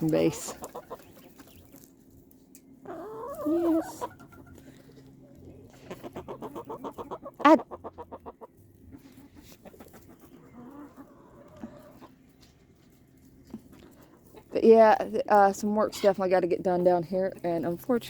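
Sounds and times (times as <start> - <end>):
chickens clucking: 0.0 - 18.0
chicken squawk: 2.8 - 4.6, 5.6 - 12.2.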